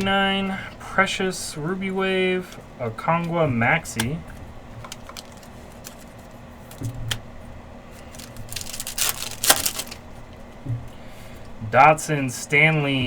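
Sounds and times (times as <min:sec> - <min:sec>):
cards clicking: 0:04.8 - 0:06.1, 0:08.0 - 0:10.0
wrapper snapping: 0:04.8 - 0:06.1, 0:08.0 - 0:10.0
foil wrapper crinkling: 0:04.8 - 0:07.0, 0:07.9 - 0:10.2.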